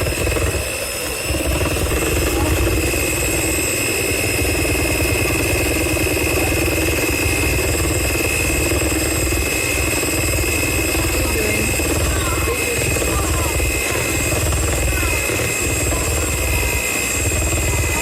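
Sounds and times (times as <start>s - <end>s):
small electric motor humming: 0.0s - 18.0s.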